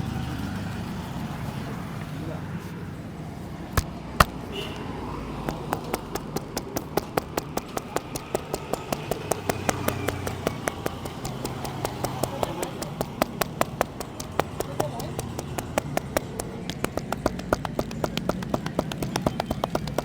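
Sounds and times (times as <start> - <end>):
hands slapping on a head: 3.7 - 4.5, 5.4 - 20.0.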